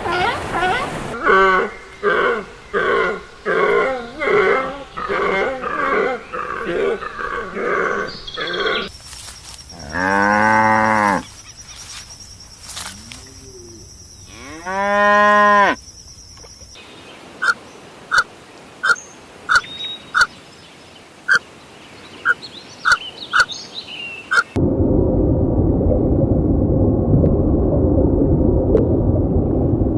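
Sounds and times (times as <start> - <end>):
cow mooing: 9.8 - 11.3, 13.0 - 15.8.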